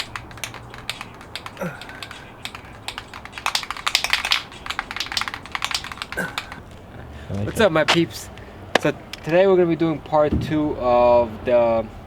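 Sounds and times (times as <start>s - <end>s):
rapid irregular clicking: 0.0s - 6.8s.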